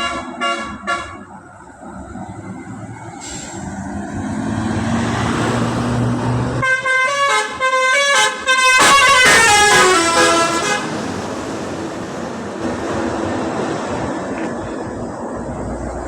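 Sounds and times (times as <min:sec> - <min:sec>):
multi-tone bus horn melody: 0:00.0 - 0:01.6, 0:06.5 - 0:11.2
bus engine: 0:00.0 - 0:16.0.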